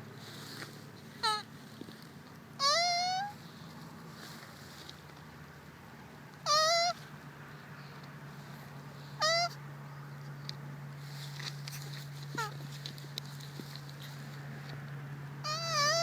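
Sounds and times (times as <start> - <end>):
turtle squeaky mating calls: 1.2 - 1.5, 2.6 - 3.4, 6.4 - 7.0, 9.2 - 9.6, 12.3 - 12.6, 15.4 - 16.0.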